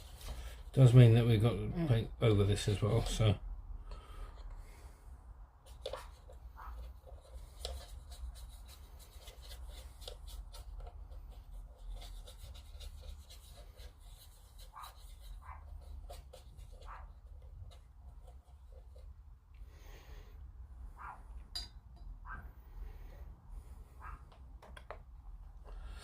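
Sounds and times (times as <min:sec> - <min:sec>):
light scratching and rubbing: 0:05.6 - 0:19.2.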